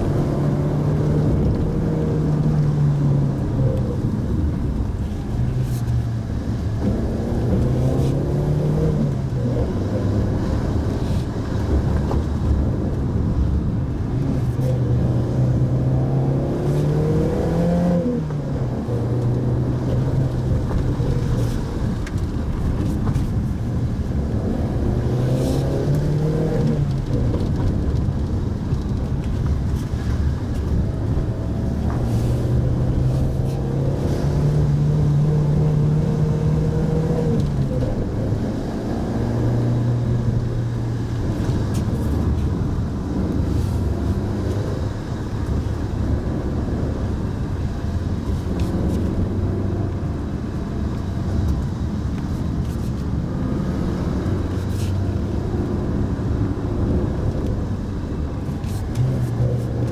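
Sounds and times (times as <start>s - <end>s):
road noise: 0.0s - 59.9s
small car engine revving: 15.1s - 22.2s, 31.2s - 40.6s.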